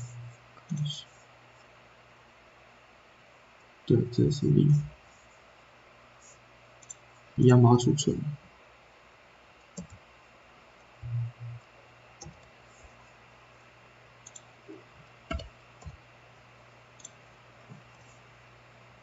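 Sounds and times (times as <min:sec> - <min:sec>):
faint low hum: 0:00.0 - 0:19.0
computer mouse clicks: 0:06.8 - 0:07.0, 0:09.7 - 0:10.0, 0:12.2 - 0:12.5, 0:14.2 - 0:16.0, 0:17.0 - 0:18.1.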